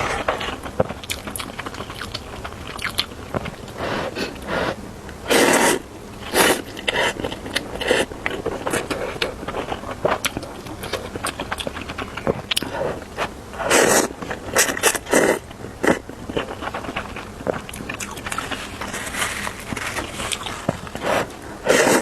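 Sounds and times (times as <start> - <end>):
wet chewing clicks: 0.0 - 22.0
person slurping noodles: 3.8 - 8.1, 12.6 - 16.0, 18.3 - 22.0.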